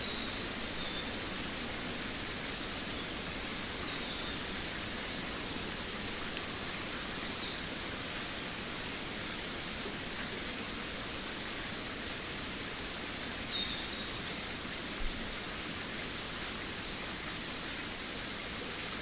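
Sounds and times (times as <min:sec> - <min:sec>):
steady background hiss: 0:00.0 - 0:19.0
songbird singing: 0:02.9 - 0:05.2, 0:05.9 - 0:07.9, 0:12.6 - 0:14.2.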